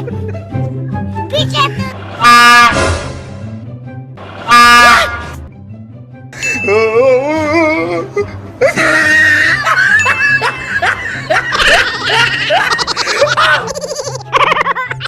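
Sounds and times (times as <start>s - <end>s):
hearty laughter: 8.6s - 15.0s.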